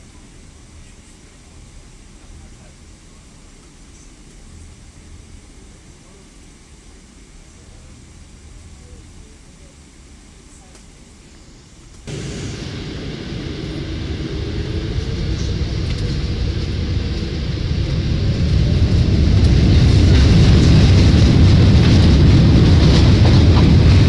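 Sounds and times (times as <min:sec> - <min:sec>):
jet engine and runway rumble: 0:00.0 - 0:24.0
air hiss: 0:11.4 - 0:20.9
low cabin rumble: 0:12.1 - 0:24.0.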